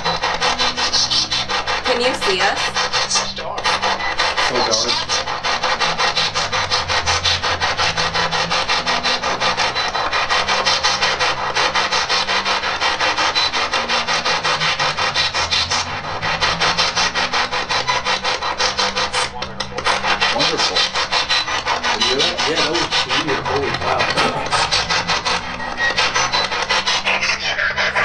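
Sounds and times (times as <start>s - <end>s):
pulsing radio static: 0.0s - 28.0s.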